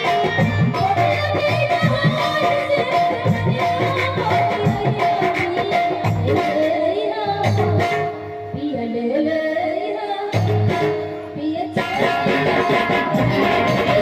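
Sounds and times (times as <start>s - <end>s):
instrumental accompaniment: 0.0s - 9.2s, 10.2s - 14.0s
woman singing: 0.0s - 14.0s.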